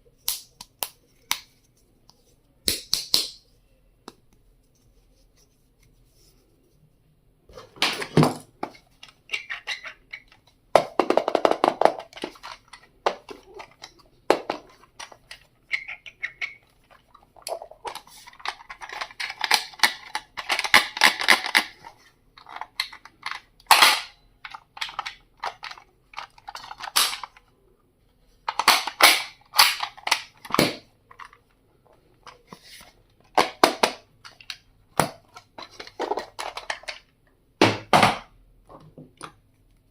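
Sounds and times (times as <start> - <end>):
plastic items clicking and tapping: 7.7 - 27.5, 28.5 - 32.6, 33.2 - 39.4.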